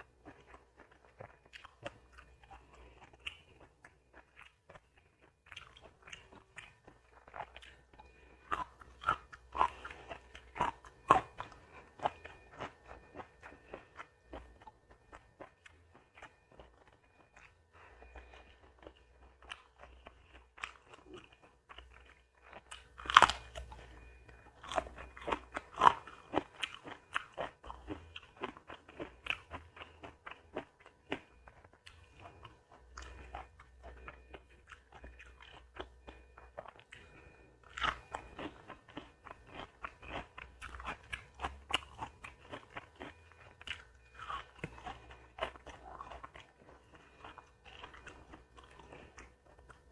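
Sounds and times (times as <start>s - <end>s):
crunchy bites and chewing: 0.0s - 49.9s.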